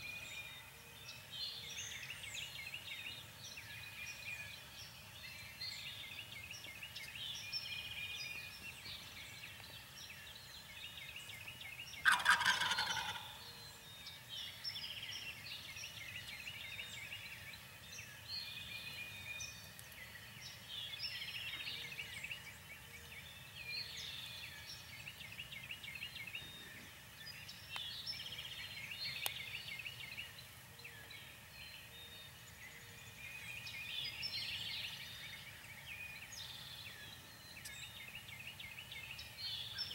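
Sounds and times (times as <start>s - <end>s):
small birds chirping: 0.0s - 39.9s
turkey gobbling: 12.0s - 13.4s.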